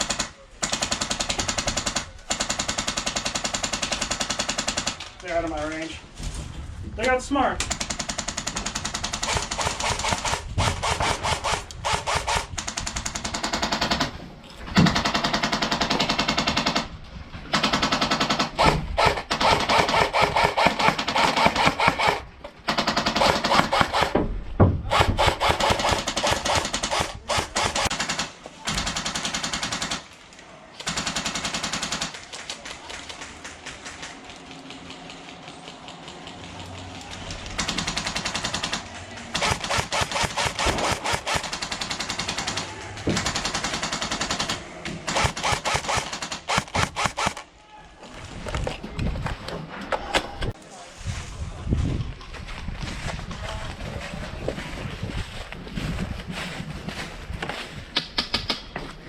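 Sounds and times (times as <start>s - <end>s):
airsoft gun full-auto bursts: 0.0s - 5.0s, 7.7s - 14.1s, 17.5s - 24.2s, 24.9s - 30.1s, 30.8s - 32.2s, 37.5s - 47.5s.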